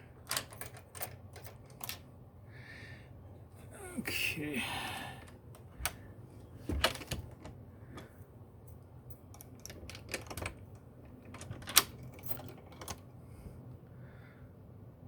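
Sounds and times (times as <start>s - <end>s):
key turning in door lock: 0.2s - 2.0s, 9.3s - 13.0s.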